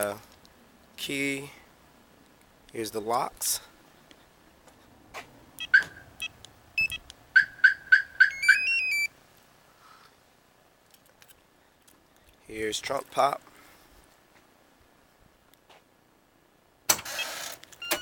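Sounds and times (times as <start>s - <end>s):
car alarm click: 5.6s - 9.1s, 17.2s - 18.0s
car alarm electronic chirps and beeps: 5.6s - 9.1s, 17.1s - 18.0s.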